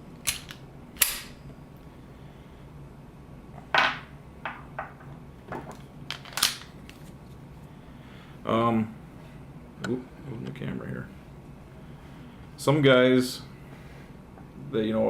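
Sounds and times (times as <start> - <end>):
pistol metallic clacks: 0.2 - 1.4.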